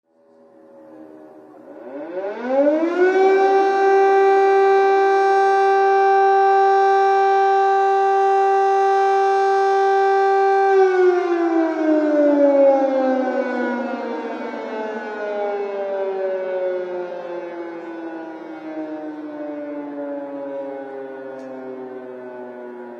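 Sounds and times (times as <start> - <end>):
air raid siren wailing: 0.1 - 22.9.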